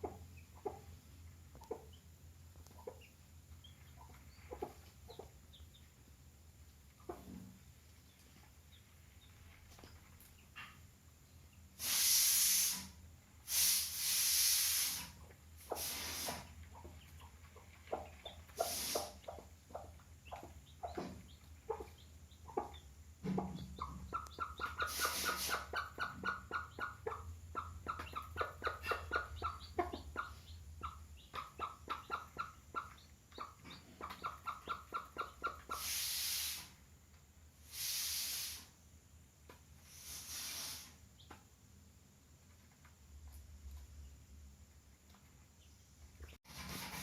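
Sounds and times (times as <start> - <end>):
hissing noise bursts: 11.8 - 16.5, 18.6 - 19.2, 37.6 - 38.8, 39.9 - 41.0
chickens calling: 15.6 - 36.2.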